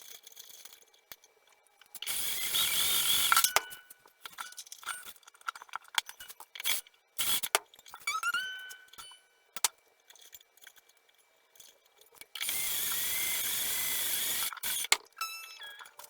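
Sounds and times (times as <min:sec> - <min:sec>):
cordless drill whine: 0:02.1 - 0:03.5, 0:12.4 - 0:14.9.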